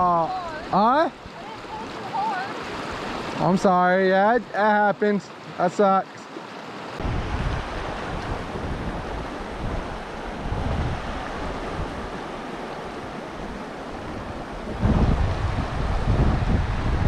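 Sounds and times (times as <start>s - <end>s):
creek rushing: 0.0s - 17.0s
low wind rumbles: 7.0s - 17.0s
wind buffeting microphone: 7.0s - 17.0s.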